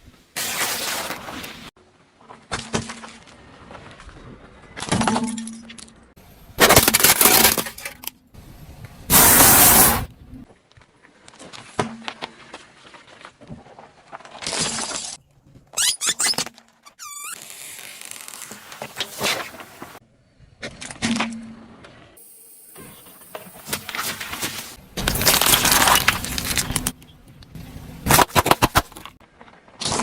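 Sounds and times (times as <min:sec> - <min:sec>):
things crushed under car tyre: 0:06.6 - 0:08.1, 0:23.9 - 0:27.0.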